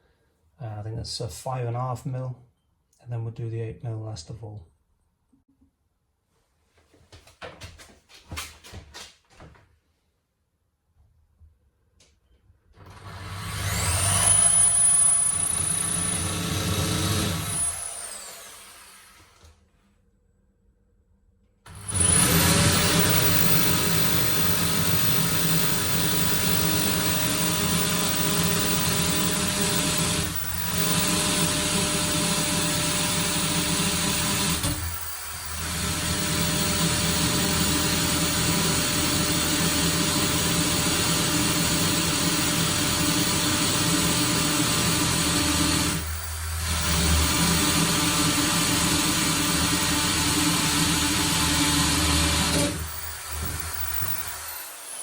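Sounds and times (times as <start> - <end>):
electric drill boring through wood: 12.8 - 19.5, 21.7 - 55.0.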